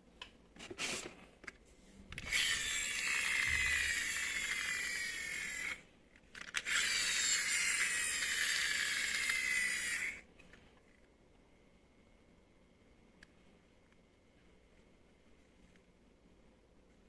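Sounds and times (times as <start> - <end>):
small electric motor whirring: 2.2 - 5.8, 6.5 - 10.2.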